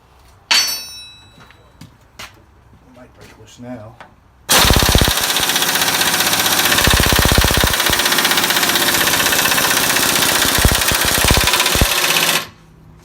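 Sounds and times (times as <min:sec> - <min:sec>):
impact wrench hammering: 0:04.5 - 0:12.5
impact wrench exhaust air: 0:04.5 - 0:12.6.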